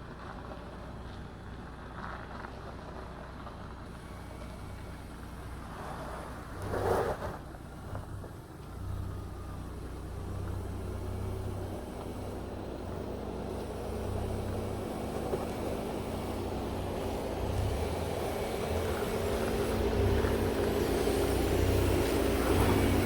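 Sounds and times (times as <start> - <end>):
engine rumbling at low revs: 0.0 - 23.0.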